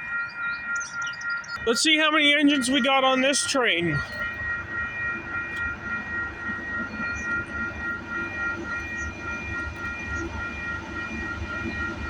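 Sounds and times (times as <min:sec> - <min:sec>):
diesel locomotives rumbling: 0:00.0 - 0:12.0
high ringing tones: 0:00.0 - 0:12.0.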